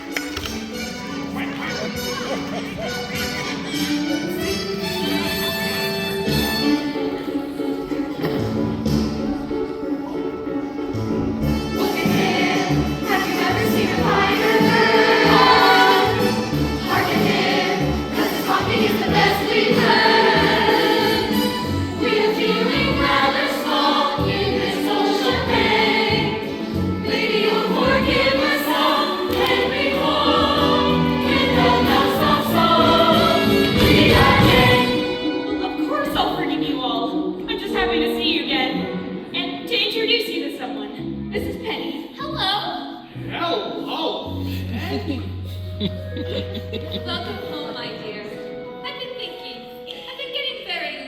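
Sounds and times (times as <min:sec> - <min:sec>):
instrumental accompaniment: 0:00.0 - 0:39.4.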